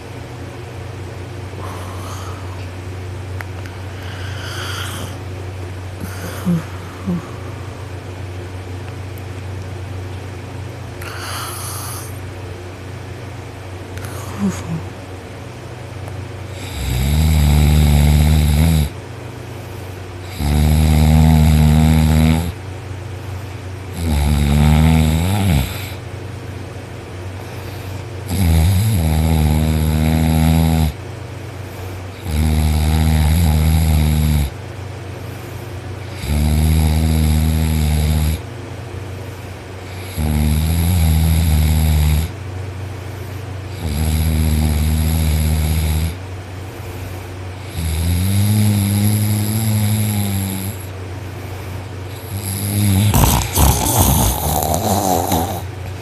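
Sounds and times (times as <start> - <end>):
steady low hum: 0.0 - 56.0
man snoring loudly: 4.0 - 5.2, 6.0 - 7.3, 14.0 - 14.8, 16.5 - 19.0, 20.2 - 22.6, 23.9 - 26.0, 28.3 - 31.0, 32.2 - 34.6, 36.0 - 38.4, 39.9 - 42.4, 43.7 - 46.2, 47.6 - 50.9, 52.1 - 55.7.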